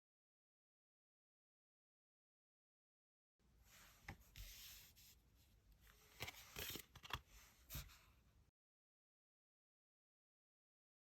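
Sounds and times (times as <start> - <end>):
papery card rustle: 6.0 - 7.9.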